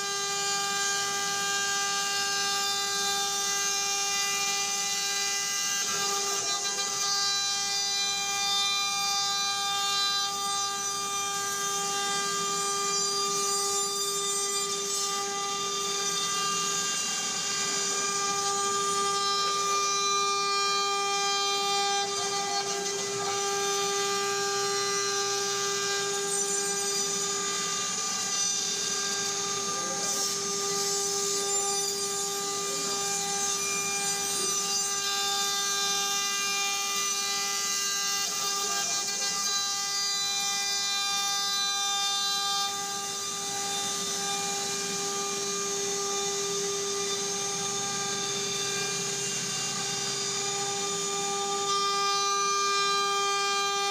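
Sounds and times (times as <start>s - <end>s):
router bit carving wood: 0.0s - 53.9s
router spindle high whine: 0.0s - 53.9s.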